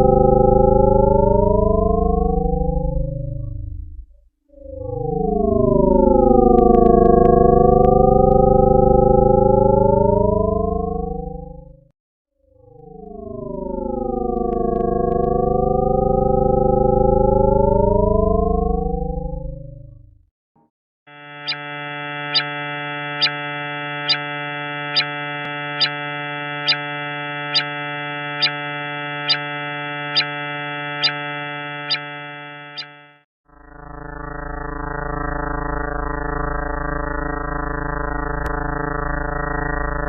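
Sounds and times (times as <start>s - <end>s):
steady electronic drone: 0.0s - 3.3s, 5.7s - 11.6s, 13.2s - 19.4s, 21.1s - 40.0s
rising gliding tone: 0.0s - 3.8s, 4.8s - 11.7s, 12.8s - 19.8s.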